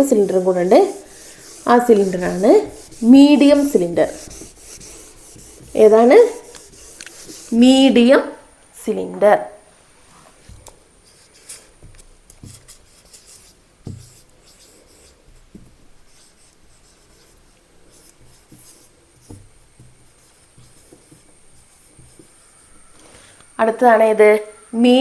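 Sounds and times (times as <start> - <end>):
pen scratching on paper: 0.0 - 7.8, 11.9 - 15.2, 16.1 - 22.4.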